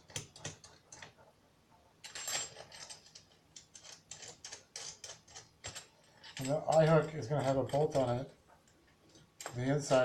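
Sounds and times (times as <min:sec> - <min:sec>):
metal hardware clicking and clinking: 0:02.0 - 0:08.2, 0:09.1 - 0:10.0.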